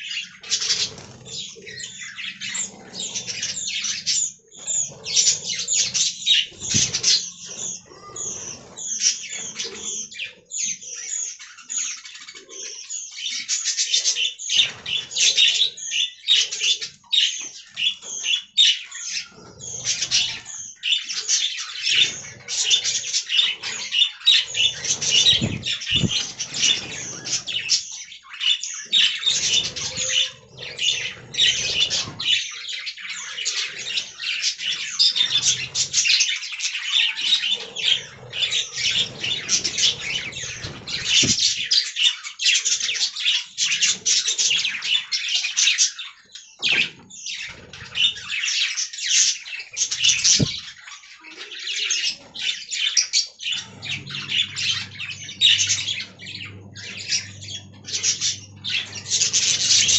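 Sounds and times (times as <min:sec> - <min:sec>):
budgerigars chattering and warbling: 0:00.0 - 0:59.9.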